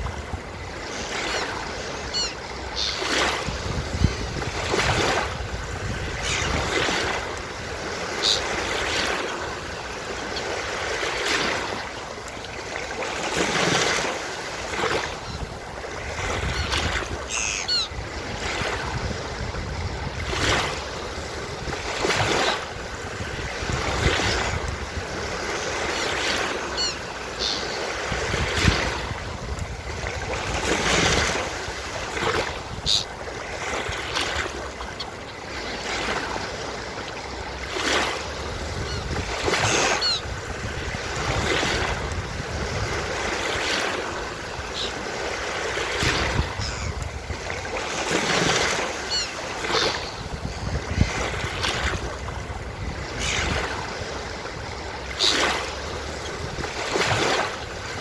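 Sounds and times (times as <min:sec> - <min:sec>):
ocean waves washing onto beach: 0:00.0 - 0:58.0
seagulls calling: 0:00.6 - 0:03.4, 0:06.0 - 0:09.4, 0:14.9 - 0:18.8, 0:25.6 - 0:29.0, 0:32.4 - 0:33.3, 0:34.8 - 0:36.2, 0:38.6 - 0:40.4, 0:44.4 - 0:47.2, 0:48.4 - 0:51.2, 0:55.0 - 0:56.4.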